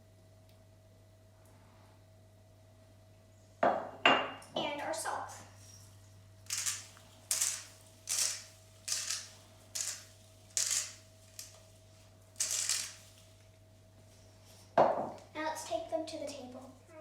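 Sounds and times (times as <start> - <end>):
salt shaker rasping shakes: 6.5 - 11.7, 12.4 - 13.3.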